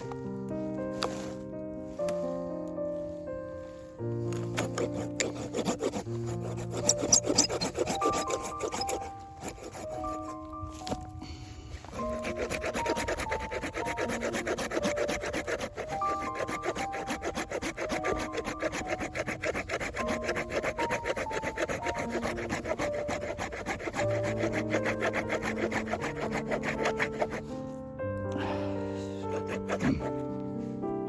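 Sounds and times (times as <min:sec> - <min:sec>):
background music: 0:00.0 - 0:31.0
hand saw cutting wood: 0:04.2 - 0:11.1, 0:11.8 - 0:27.6, 0:29.2 - 0:30.4.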